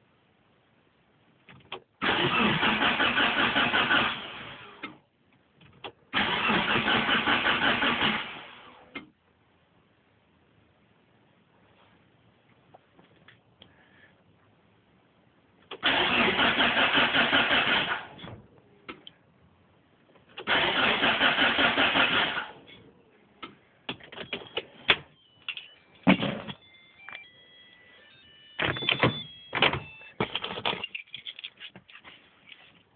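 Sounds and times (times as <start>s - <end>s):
starter motor cranking engine: 2.0s - 4.6s, 6.2s - 8.6s, 15.8s - 18.2s, 20.4s - 22.6s.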